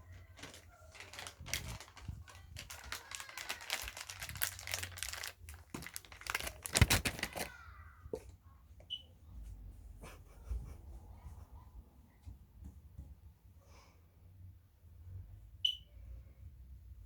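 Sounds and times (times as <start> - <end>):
plastic packet crinkling: 0.1 - 7.6.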